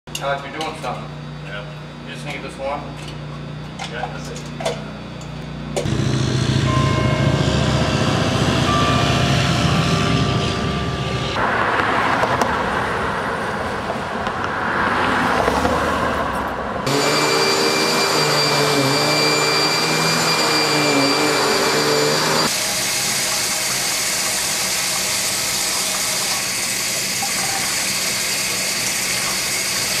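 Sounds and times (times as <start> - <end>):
machine and engine noise: 0.1 - 14.8, 15.6 - 30.0
wavering motor hum: 4.4 - 11.4, 16.9 - 22.6.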